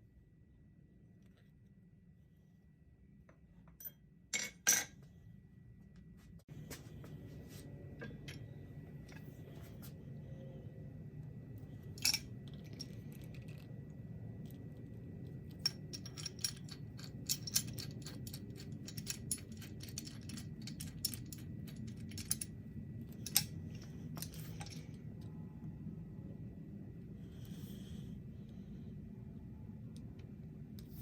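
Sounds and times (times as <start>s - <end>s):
low steady hum: 0.0s - 31.0s
small metal parts clinking: 11.9s - 13.6s, 15.5s - 25.0s.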